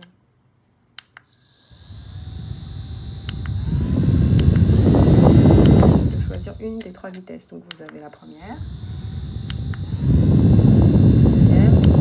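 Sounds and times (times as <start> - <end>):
small fan motor whining: 1.4 - 7.1, 7.8 - 12.0
airflow rushing over microphone: 1.8 - 6.9, 8.4 - 12.0
fan switch click: 3.2 - 3.6, 4.3 - 8.1, 9.4 - 10.6, 11.4 - 12.0.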